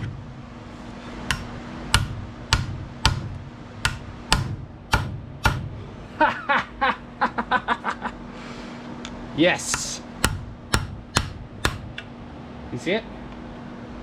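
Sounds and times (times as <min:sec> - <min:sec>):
hammer striking chisel on metal: 0:01.2 - 0:05.8, 0:09.7 - 0:12.1.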